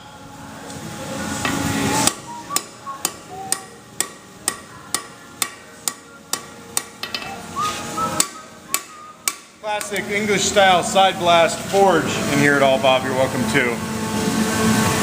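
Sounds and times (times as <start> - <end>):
hammer striking steel on anvil: 2.0 - 7.4, 8.2 - 10.0.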